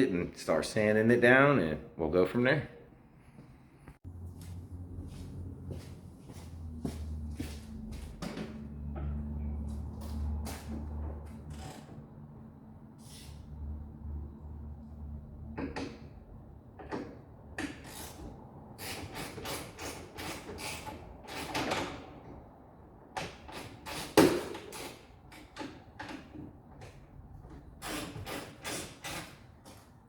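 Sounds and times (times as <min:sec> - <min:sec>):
hand tools and metal clanking: 0:23.2 - 0:30.0.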